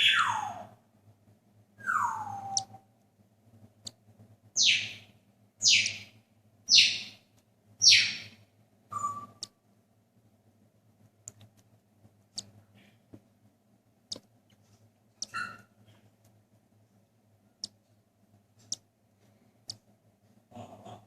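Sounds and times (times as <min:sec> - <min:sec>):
chick chirp: 0:01.8 - 0:02.8, 0:05.6 - 0:06.1
faint sharp clicks: 0:11.2 - 0:11.7, 0:18.6 - 0:19.9.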